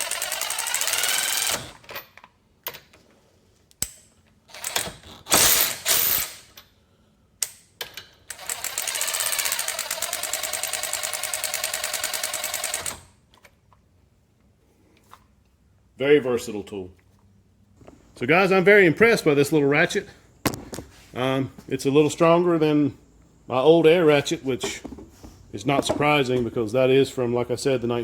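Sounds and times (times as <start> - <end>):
cordless ratchet running: 0.0 - 1.8, 8.3 - 13.1
ratchet clicks: 0.0 - 1.8, 8.3 - 13.1.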